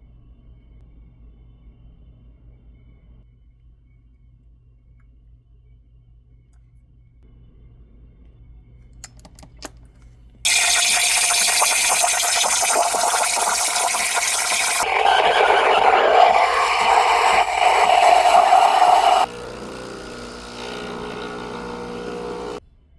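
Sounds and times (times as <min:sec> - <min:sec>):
espresso machine rushing: 0:10.5 - 0:22.6.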